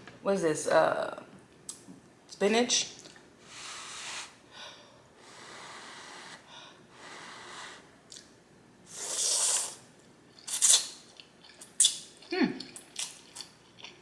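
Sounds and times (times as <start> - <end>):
slurping hot noodles: 8.9 - 9.8.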